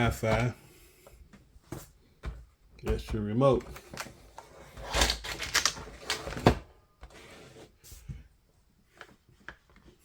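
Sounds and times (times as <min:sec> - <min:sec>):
packaging rustling and rattling: 0:03.7 - 0:06.6.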